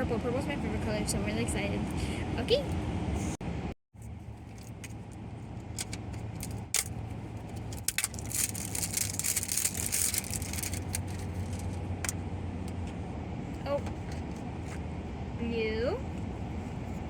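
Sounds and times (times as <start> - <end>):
low hum: 0.0 - 17.0
plastic packaging crinkling and tearing: 7.6 - 11.8.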